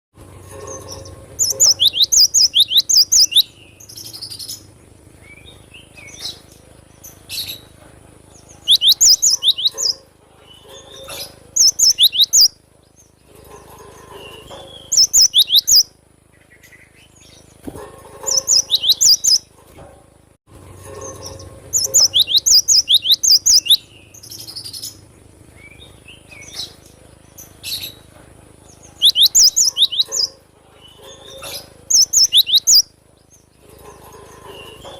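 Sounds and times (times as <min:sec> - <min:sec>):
soft bird calls: 0:00.5 - 0:19.6, 0:20.9 - 0:34.9
bird singing rapid high notes: 0:00.6 - 0:07.6, 0:08.4 - 0:12.6, 0:14.2 - 0:17.5, 0:18.2 - 0:19.5, 0:21.1 - 0:25.0, 0:28.8 - 0:33.0.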